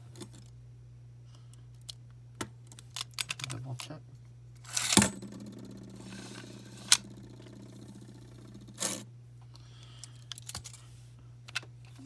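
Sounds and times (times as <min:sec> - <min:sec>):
string launcher whirring and rattling: 0:04.6 - 0:09.0.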